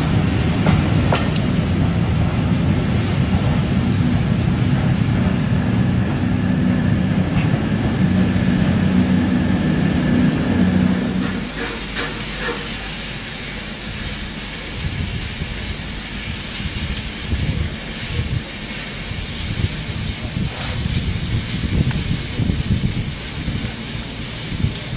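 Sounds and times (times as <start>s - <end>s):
train running with low drone: 0.0s - 24.9s
hiss: 8.7s - 24.9s.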